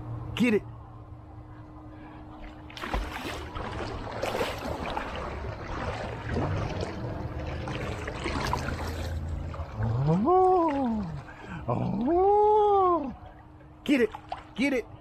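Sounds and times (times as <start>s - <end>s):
pool water splashing: 2.2s - 15.0s.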